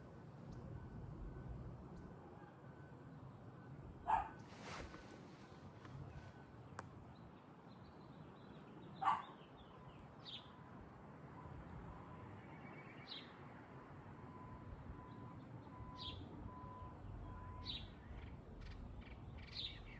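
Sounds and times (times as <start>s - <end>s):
dog barking: 4.1s - 4.5s, 9.0s - 9.4s
bird chirping: 15.0s - 16.3s, 17.1s - 19.9s.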